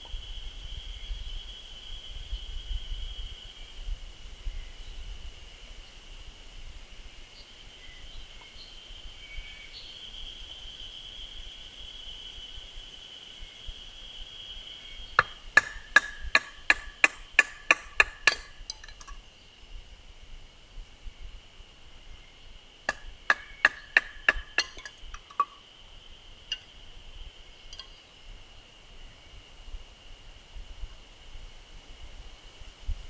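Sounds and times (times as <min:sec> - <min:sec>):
insect trill: 0:07.1 - 0:30.2
tools striking while splitting firewood: 0:15.2 - 0:19.2, 0:22.9 - 0:25.6, 0:26.5 - 0:26.7.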